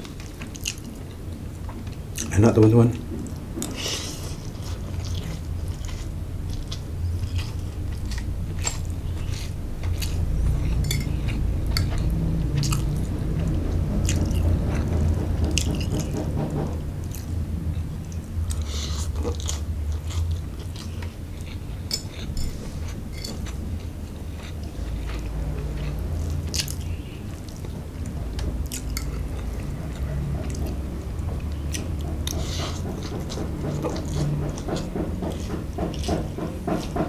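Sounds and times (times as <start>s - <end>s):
chewing food: 0.0s - 2.4s, 3.2s - 37.0s.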